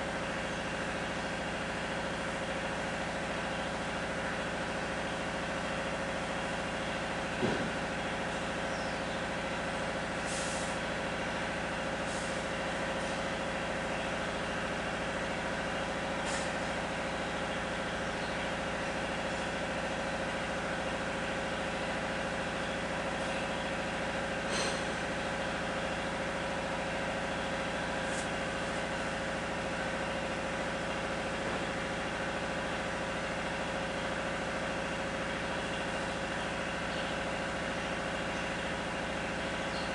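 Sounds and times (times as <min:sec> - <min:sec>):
steady mechanical hum: 0:00.0 - 0:39.9.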